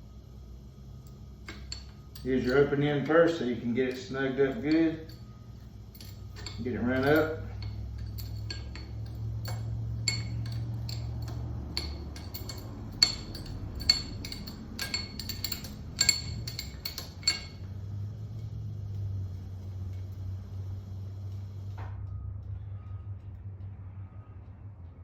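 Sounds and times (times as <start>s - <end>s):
steady low hum: 0.0s - 25.0s
wrench clinking against metal: 1.0s - 20.2s.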